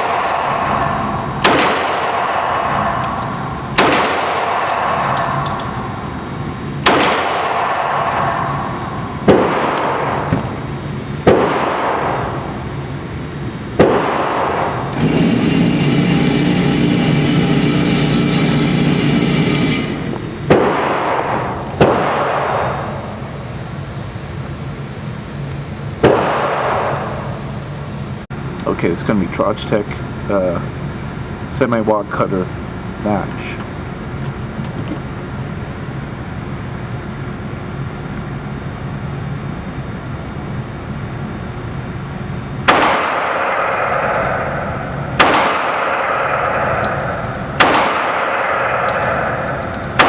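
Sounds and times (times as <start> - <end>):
echoing gunshots: 0.0 - 3.1, 3.7 - 5.3, 6.8 - 12.6, 13.8 - 15.3, 19.0 - 23.2, 26.0 - 27.3, 42.6 - 50.0
steady loud noise: 0.0 - 50.0.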